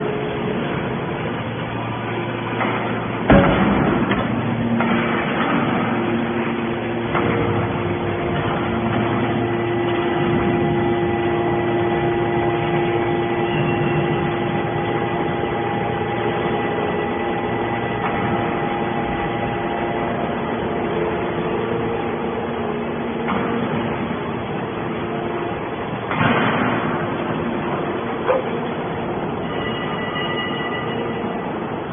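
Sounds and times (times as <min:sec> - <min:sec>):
baler machine drone: 0:00.0 - 0:31.9
loud metal bang: 0:02.5 - 0:19.4, 0:26.0 - 0:28.1.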